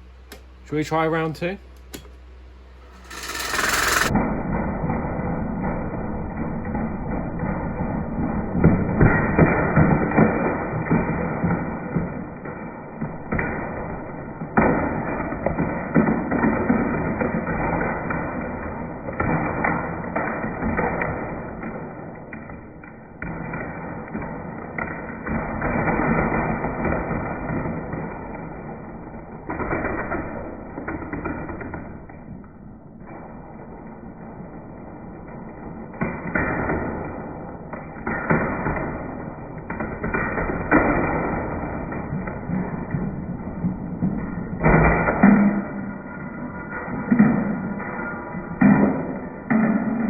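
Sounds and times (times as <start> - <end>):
electric fan running: 0.0 - 4.6
plastic parts knocking: 2.9 - 4.1.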